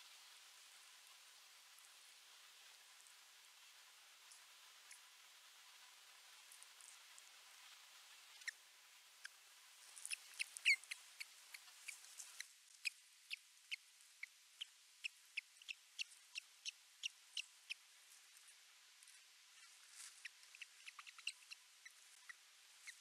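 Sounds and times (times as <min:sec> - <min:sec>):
faint hiss: 0:00.0 - 0:23.0
osprey chirping: 0:10.1 - 0:11.3, 0:13.3 - 0:17.8, 0:19.6 - 0:23.0.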